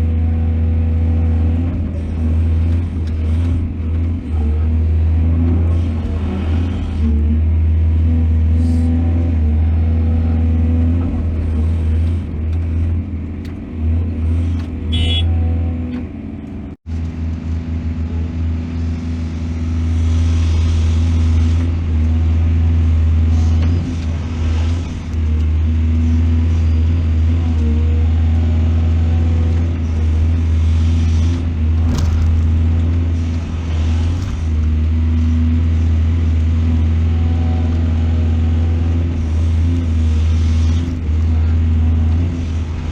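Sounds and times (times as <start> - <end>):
excavator diesel engine droning: 0.0 - 42.9.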